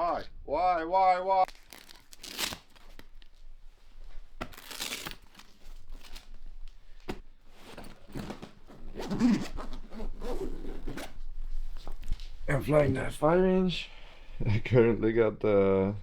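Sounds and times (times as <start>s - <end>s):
rustling and crinkling: 1.5s - 12.5s.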